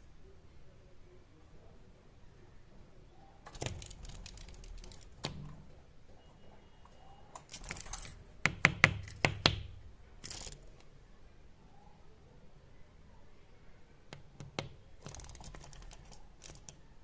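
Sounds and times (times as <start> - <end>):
sharp taps and clicks: 8.4 - 9.7, 14.1 - 16.7.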